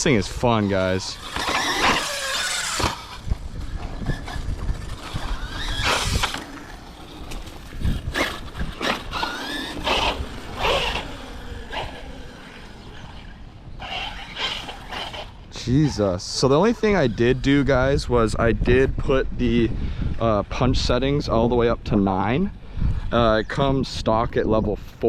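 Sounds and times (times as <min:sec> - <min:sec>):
electric motor whining: 0:00.0 - 0:18.0
tyres scrabbling over dirt: 0:00.6 - 0:15.4.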